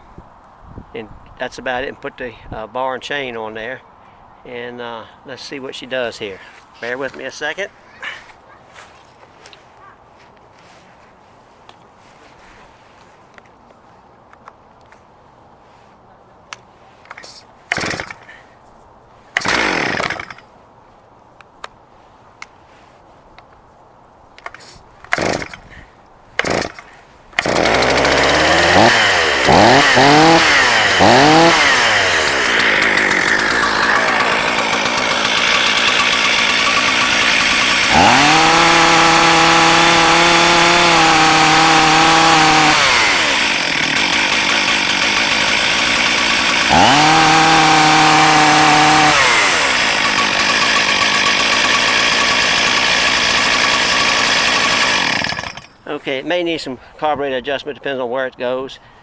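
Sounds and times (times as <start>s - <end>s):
chainsaw pull-start tugs: 17.1s - 18.4s, 19.3s - 20.5s, 24.4s - 56.0s
chainsaw engine revving and idling: 17.7s - 18.3s, 19.4s - 20.4s, 25.1s - 25.6s, 26.4s - 55.7s.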